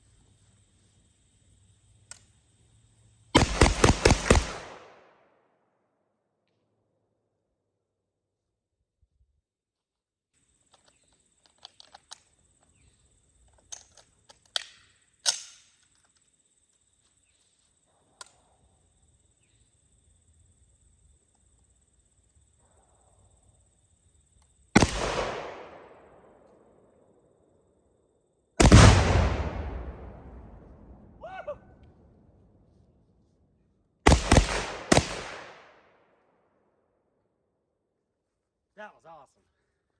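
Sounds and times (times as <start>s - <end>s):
small sharp pops and clicks: 13.4s - 16.3s
loud explosion: 28.6s - 31.2s.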